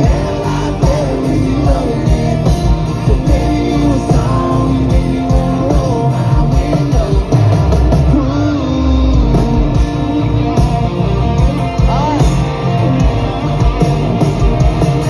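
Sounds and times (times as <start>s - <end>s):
steady drum beat: 0.0s - 8.4s, 9.1s - 15.0s
person singing: 0.0s - 10.2s
guitar: 0.0s - 15.0s.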